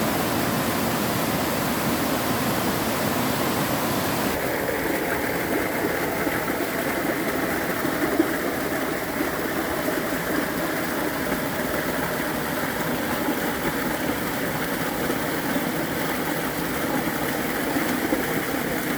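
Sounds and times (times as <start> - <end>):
waterfall rushing: 0.0 - 5.3.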